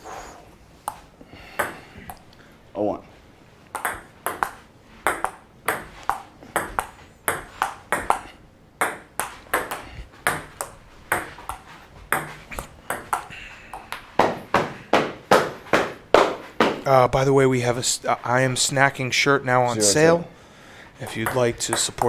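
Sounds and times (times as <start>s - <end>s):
table tennis ball clicking: 3.7s - 14.2s.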